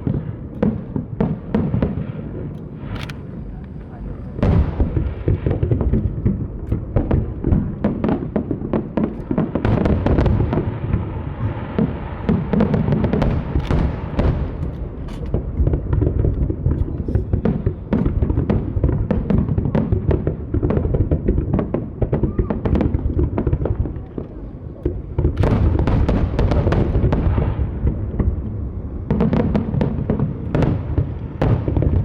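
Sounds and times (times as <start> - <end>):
fireworks booming and cracking: 0.0 - 32.0
low rumble: 2.2 - 19.1.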